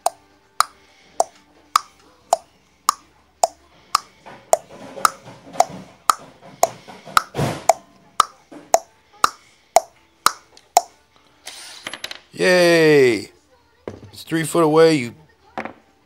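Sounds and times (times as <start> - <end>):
percussive clicking beat: 0.0 - 10.9.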